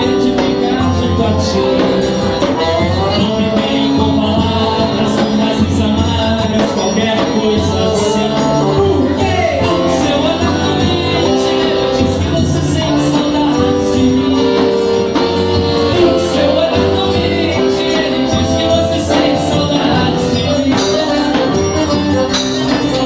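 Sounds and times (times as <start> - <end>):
live dance band music: 0.0 - 23.0
person singing: 0.0 - 23.0.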